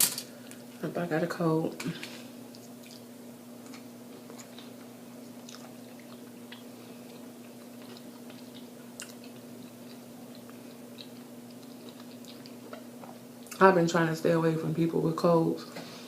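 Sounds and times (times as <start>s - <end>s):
person chewing food: 2.4s - 13.6s.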